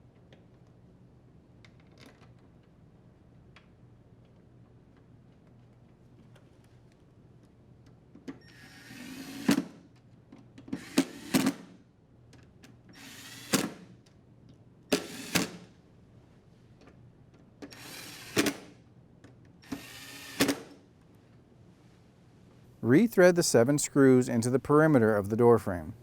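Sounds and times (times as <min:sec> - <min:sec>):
cordless drill driving screws: 0:08.4 - 0:09.7, 0:10.7 - 0:11.6, 0:12.9 - 0:13.8, 0:14.9 - 0:15.6, 0:17.7 - 0:18.6, 0:19.6 - 0:20.8.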